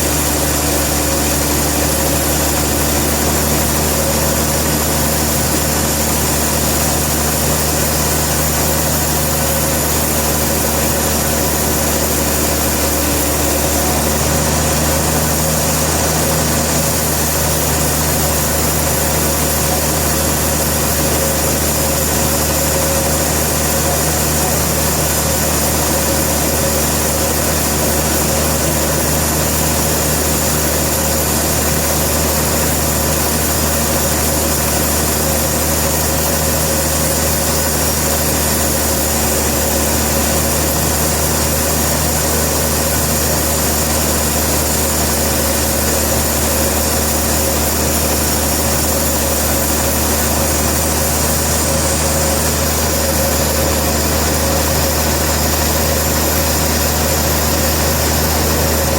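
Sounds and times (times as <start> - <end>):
engine running steadily: 0.0 - 58.9.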